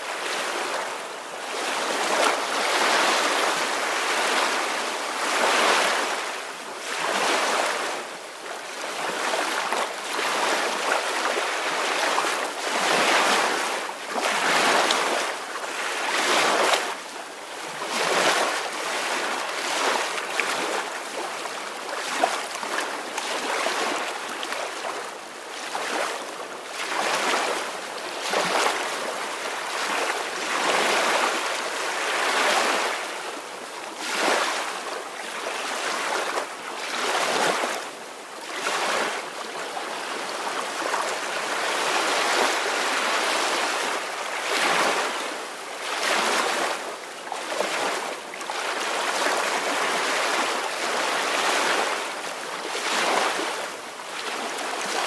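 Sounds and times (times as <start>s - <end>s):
small waves on a shore: 0.0s - 55.0s.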